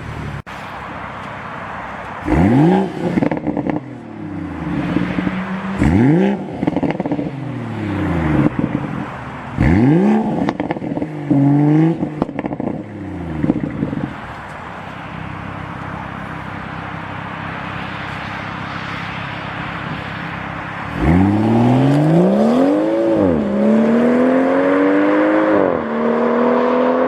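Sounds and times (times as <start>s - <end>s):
car engine idling: 0.0s - 23.7s
car engine revving: 2.2s - 27.0s
exhaust crackles and pops: 9.6s - 22.7s.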